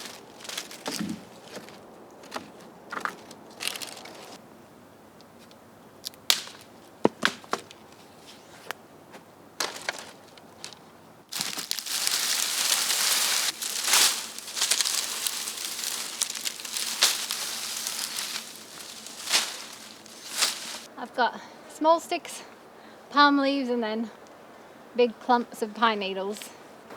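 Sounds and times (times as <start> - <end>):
dry sticks snapping: 0.0 - 2.4, 3.0 - 4.4, 5.4 - 7.8, 9.6 - 20.9
dry brush crackling rustle: 0.0 - 4.4, 9.6 - 20.9.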